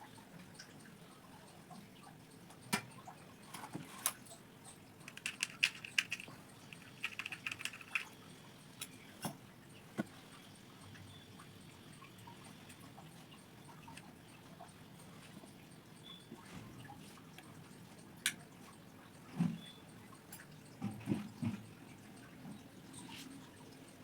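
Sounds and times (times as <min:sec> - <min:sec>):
small hard objects clicking: 0:05.0 - 0:08.2.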